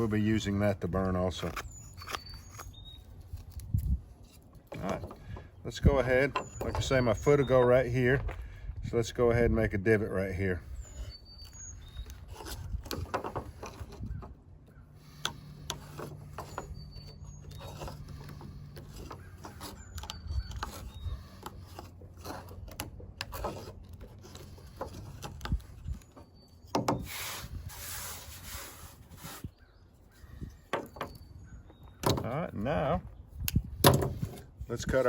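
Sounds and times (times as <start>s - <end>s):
knife scraping wood: 1.0s - 5.4s, 10.7s - 31.2s.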